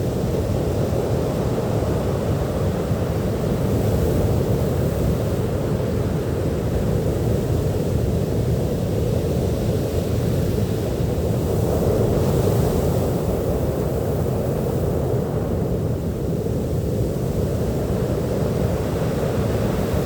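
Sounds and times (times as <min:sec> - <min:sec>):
waves rushing on a beach: 0:10.1 - 0:20.0.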